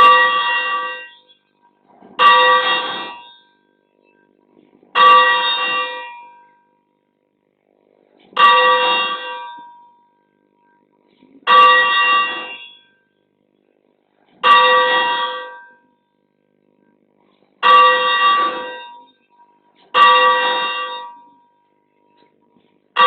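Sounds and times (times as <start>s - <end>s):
church bell ringing: 0.0s - 1.4s, 2.2s - 4.3s, 4.9s - 6.9s, 8.4s - 10.8s, 11.5s - 13.1s, 14.4s - 16.1s, 17.6s - 19.3s, 19.9s - 22.2s.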